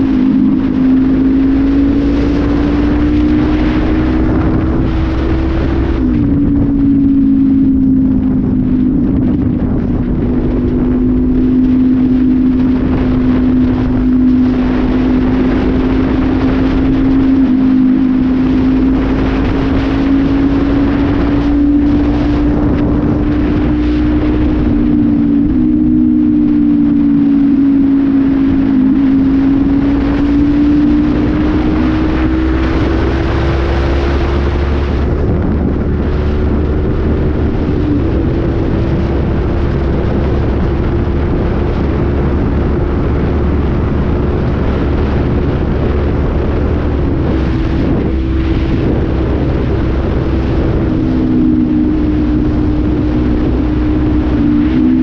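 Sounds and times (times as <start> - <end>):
motorcycle engine cruising: 0.0 - 55.0
wind noise: 0.0 - 55.0.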